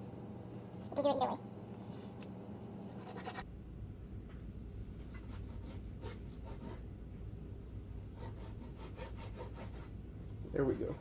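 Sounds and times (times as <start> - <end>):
knife cutting on cutting board: 5.0 - 6.8.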